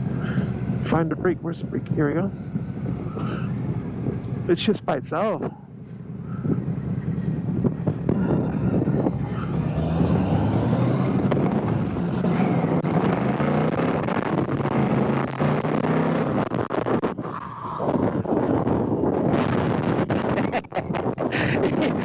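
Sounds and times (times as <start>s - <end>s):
wind rush: 5.2s - 22.0s.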